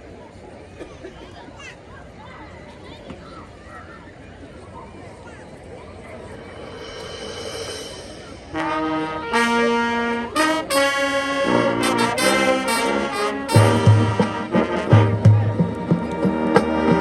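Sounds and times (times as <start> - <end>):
brass band chords: 6.2 - 17.0.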